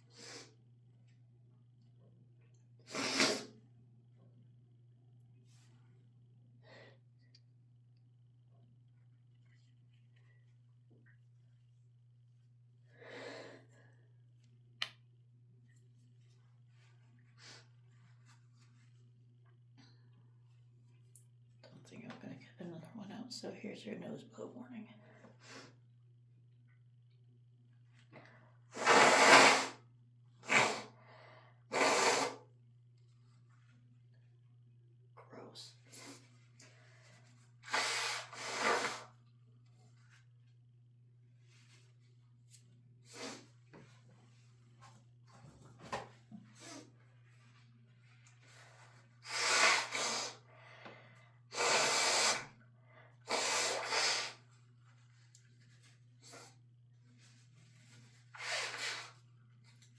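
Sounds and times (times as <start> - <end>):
person blowing nose: 2.9 - 3.5, 28.7 - 29.8, 30.4 - 31.0, 31.7 - 32.4, 37.6 - 39.2, 43.0 - 43.5, 49.2 - 50.4, 51.5 - 52.5, 53.3 - 54.4, 58.3 - 59.2.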